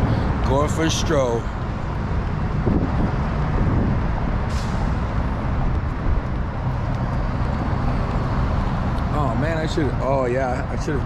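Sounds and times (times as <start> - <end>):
low rumble of traffic: 0.0 - 11.0
air brake hiss: 4.5 - 5.1.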